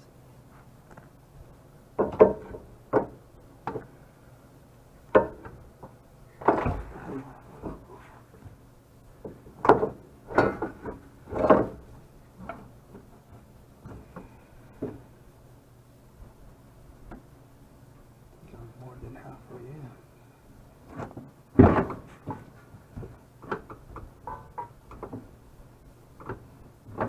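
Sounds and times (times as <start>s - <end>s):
metal knocks and clunks: 2.0s - 3.9s, 6.4s - 8.5s, 9.3s - 12.7s, 20.9s - 25.3s.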